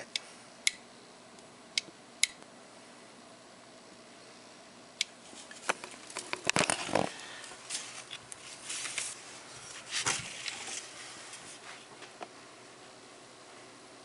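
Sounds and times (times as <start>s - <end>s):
rustling: 5.2s - 12.2s.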